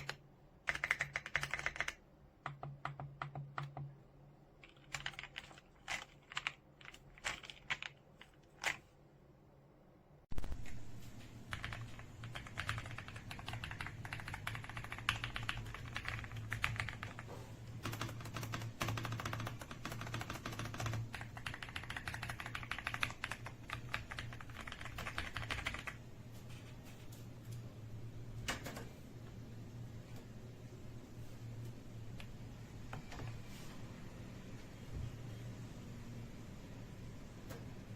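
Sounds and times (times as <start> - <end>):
mechanical keyboard typing: 0.0 - 4.0, 4.6 - 8.9, 11.4 - 26.0
low steady hum: 0.0 - 37.9.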